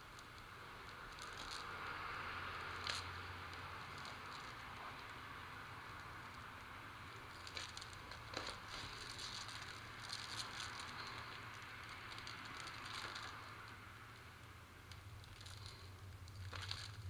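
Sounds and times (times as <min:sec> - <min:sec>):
hands rustling and tapping plastic: 0:07.2 - 0:13.8.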